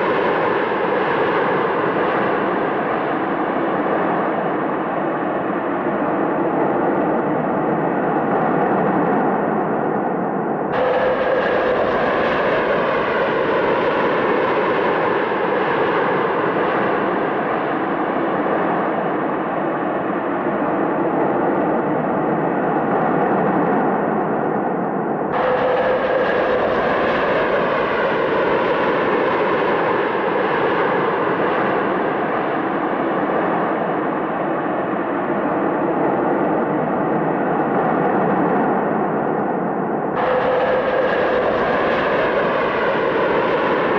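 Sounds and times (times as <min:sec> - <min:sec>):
jet engines running: 0:39.0 - 0:43.9.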